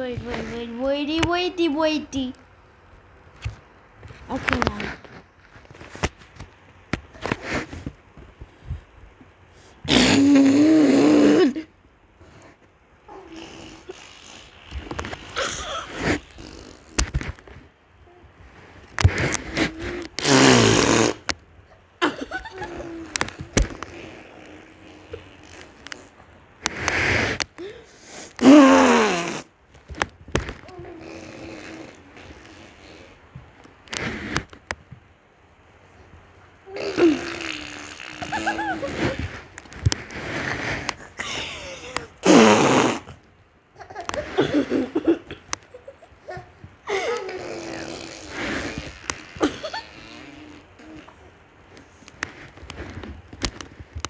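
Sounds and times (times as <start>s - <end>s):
girl making fart noises: 9.8s - 11.7s, 13.2s - 17.6s, 19.0s - 21.3s, 22.1s - 27.4s, 28.4s - 29.6s, 30.6s - 33.4s, 36.7s - 39.5s, 40.2s - 43.2s, 43.8s - 51.3s.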